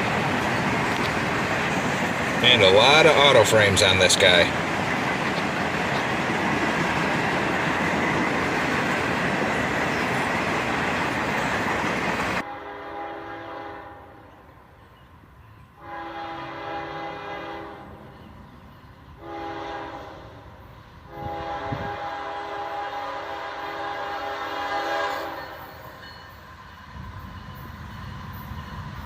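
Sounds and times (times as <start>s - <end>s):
freight train rolling past: 0.0s - 29.0s
locomotive air horn blasts: 12.4s - 14.2s, 15.8s - 18.0s, 19.2s - 20.4s, 21.1s - 25.6s.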